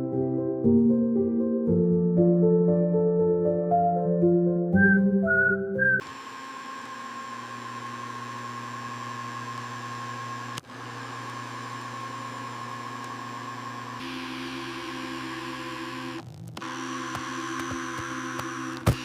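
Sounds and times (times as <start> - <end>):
robot vacuum motor whirring: 6.0 - 19.0.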